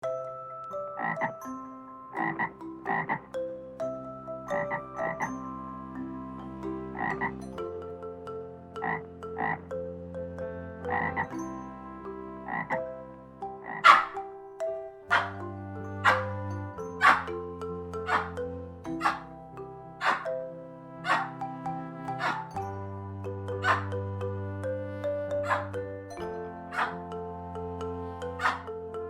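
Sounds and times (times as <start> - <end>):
steady held tones: 13.4 - 29.0
short sharp animal calls: 13.8 - 14.2, 19.0 - 19.2, 21.0 - 21.3, 22.2 - 22.4, 25.4 - 25.7.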